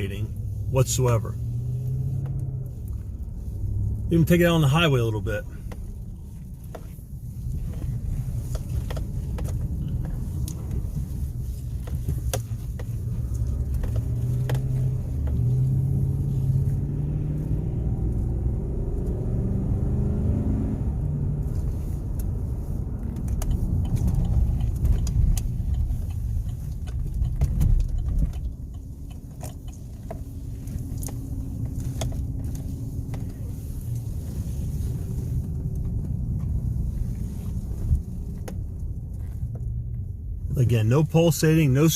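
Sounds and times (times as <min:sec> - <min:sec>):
engine and road noise rumble: 0:00.0 - 0:41.9.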